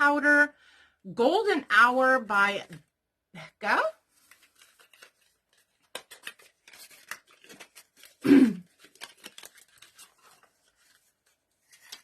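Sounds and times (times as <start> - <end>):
packaging clicks and rustles: 4.2 - 12.0.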